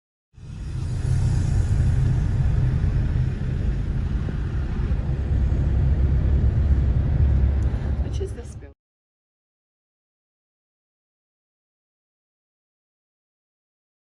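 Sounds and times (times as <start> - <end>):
moving vehicle rumble: 0.4 - 8.8.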